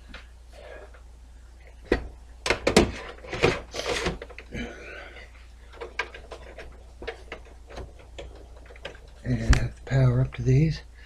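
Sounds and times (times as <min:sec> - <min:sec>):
computer parts knocking and rattling: 0:01.8 - 0:04.6, 0:05.7 - 0:10.1.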